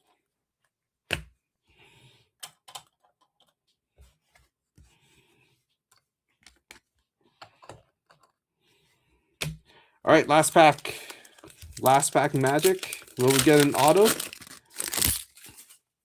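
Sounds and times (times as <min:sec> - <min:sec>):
trading cards tapping and rustling: 0:10.4 - 0:15.6.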